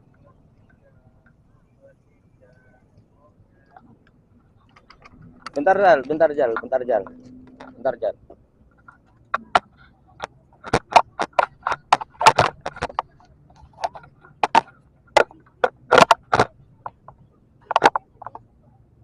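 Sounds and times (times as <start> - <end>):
sharp clicks and knocks: 3.6 - 7.8, 8.7 - 18.5.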